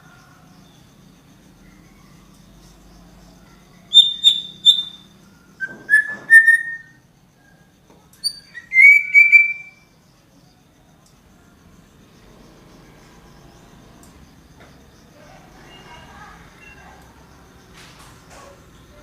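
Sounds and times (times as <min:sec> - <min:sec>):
bird singing whistled notes: 0:03.9 - 0:07.0, 0:08.2 - 0:09.9.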